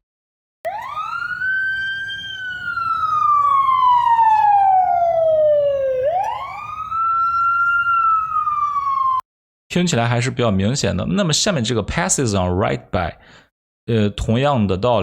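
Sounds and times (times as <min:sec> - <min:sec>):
siren wailing past: 0:00.7 - 0:09.2.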